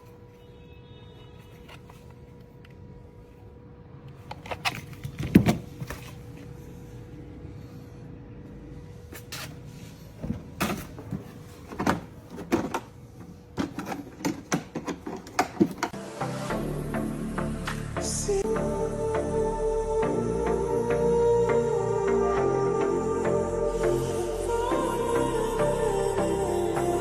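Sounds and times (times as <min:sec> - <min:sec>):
household objects clicking and knocking: 0:10.2 - 0:16.0.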